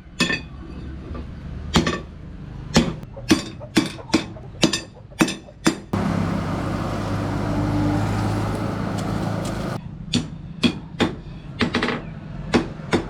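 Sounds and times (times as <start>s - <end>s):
steady machine hum: 6.0s - 9.8s.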